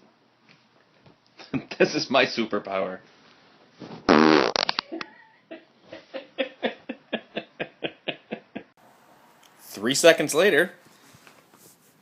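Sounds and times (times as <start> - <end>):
man farting: 3.9 - 5.0.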